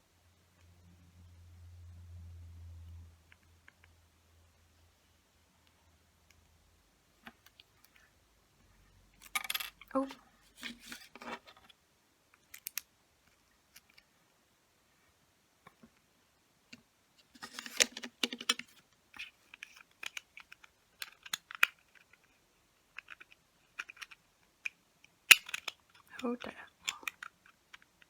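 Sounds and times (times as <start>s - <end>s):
plastic parts clicking: 12.4s - 12.9s, 17.4s - 22.3s, 23.0s - 28.0s.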